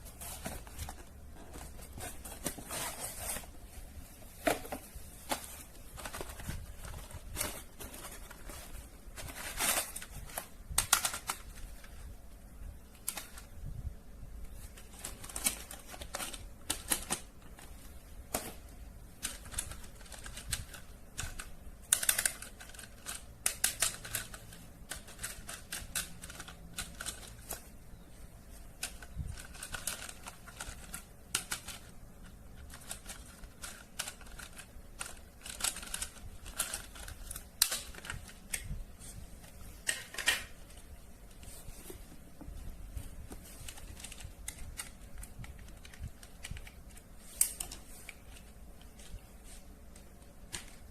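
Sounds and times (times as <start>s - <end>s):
plastic toys and packaging handled: 0.0s - 13.7s, 14.4s - 50.9s.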